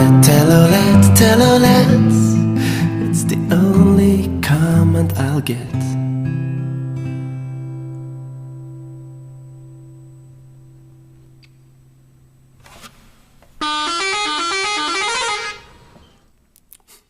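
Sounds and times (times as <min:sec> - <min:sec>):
strummed acoustic guitar chord: 0:00.0 - 0:11.3
multi-tone bus horn: 0:13.6 - 0:16.1.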